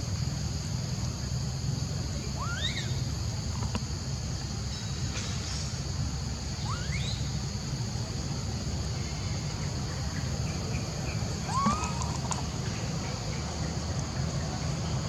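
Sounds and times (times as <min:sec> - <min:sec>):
insect drone: 0:00.0 - 0:15.0
animal squeaking calls: 0:02.4 - 0:03.0, 0:06.6 - 0:07.2, 0:11.5 - 0:12.4.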